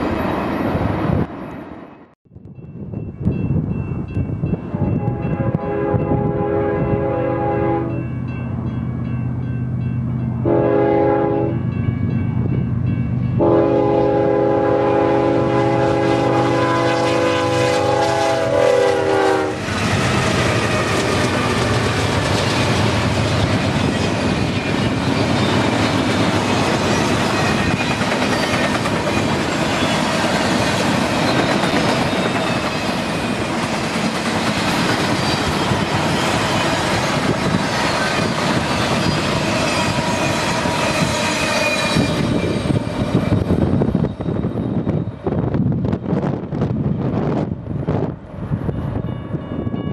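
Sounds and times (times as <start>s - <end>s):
locomotive air horn: 4.7s - 8.0s, 10.4s - 11.7s, 13.4s - 19.7s
train wheel-and-rail clatter: 19.6s - 46.4s.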